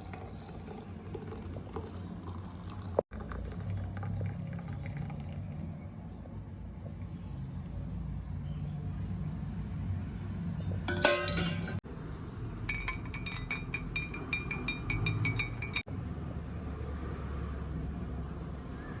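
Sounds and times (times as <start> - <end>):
metal spoon clinking against glass: 10.9 - 11.8, 12.7 - 15.9.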